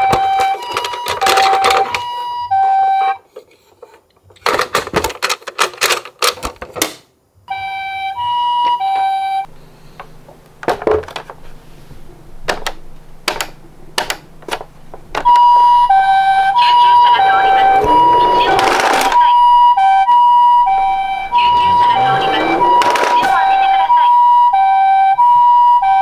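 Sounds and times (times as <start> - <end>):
toy electronic two-tone siren: 0.0 - 3.2, 15.2 - 26.0
plastic rattling and clicks: 4.3 - 7.0, 12.5 - 15.4
faint low hum: 11.3 - 24.5.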